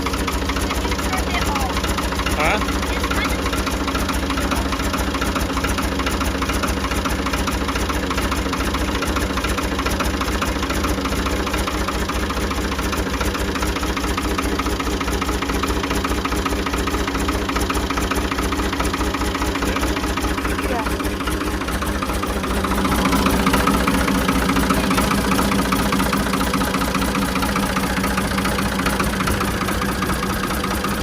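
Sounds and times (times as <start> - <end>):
backhoe engine idling: 0.0 - 31.0.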